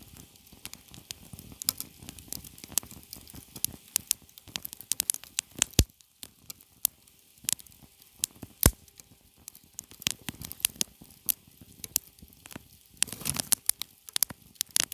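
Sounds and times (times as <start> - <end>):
campfire crackling: 0.1 - 14.9.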